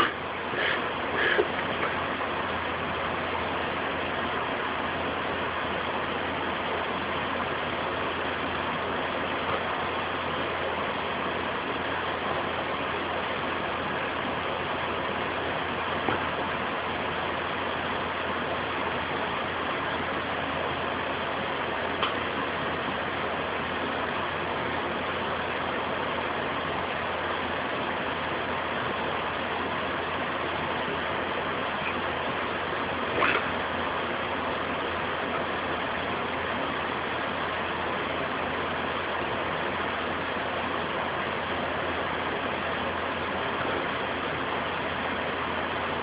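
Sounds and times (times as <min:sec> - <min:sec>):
dog coughing: 0:00.0 - 0:02.0, 0:33.2 - 0:33.5
low background hum: 0:00.0 - 0:46.0.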